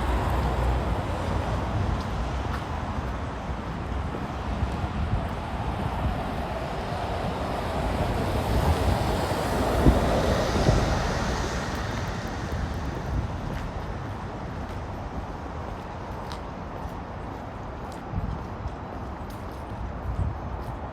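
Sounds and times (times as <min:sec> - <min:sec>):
wind buffeting microphone: 0:00.0 - 0:20.9
vehicle passing by: 0:06.8 - 0:14.3.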